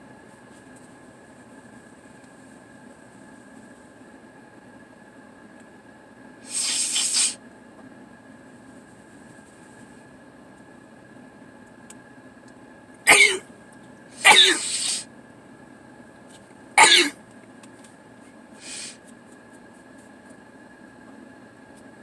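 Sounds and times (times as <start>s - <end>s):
person sneezing: 6.5s - 7.4s, 13.1s - 13.4s, 14.2s - 15.0s, 16.8s - 17.2s, 18.6s - 19.0s
faint rush of breath: 18.6s - 19.0s.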